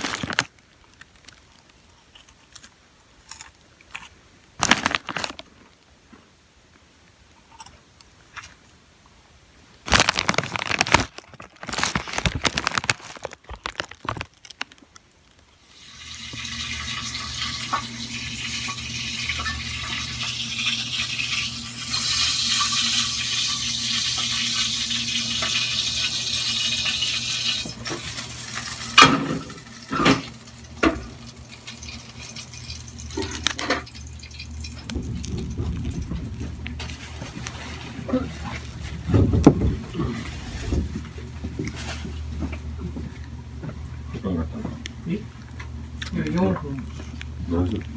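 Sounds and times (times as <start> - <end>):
water pouring steadily: 15.6 - 38.2.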